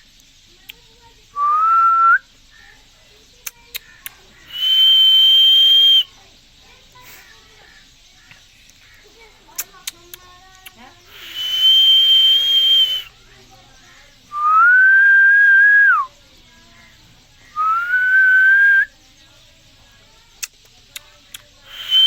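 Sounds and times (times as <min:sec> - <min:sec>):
parakeet whistling: 0:04.5 - 0:06.1, 0:11.1 - 0:13.1, 0:21.7 - 0:22.0.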